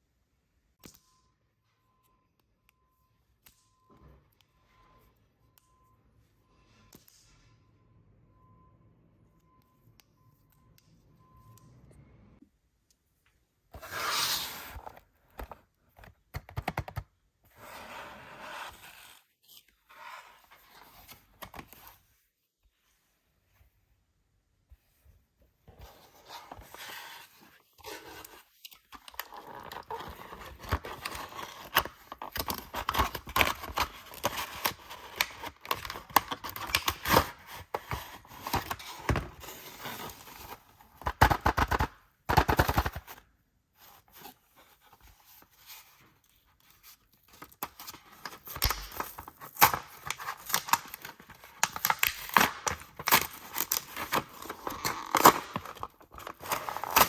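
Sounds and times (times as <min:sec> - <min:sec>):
packaging crinkling and tearing: 0:26.4 - 0:43.2, 0:46.8 - 0:57.0.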